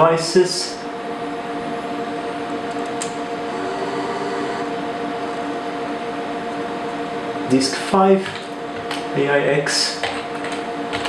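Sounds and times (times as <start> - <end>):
computer cooling fans whirring: 0.0 - 11.0.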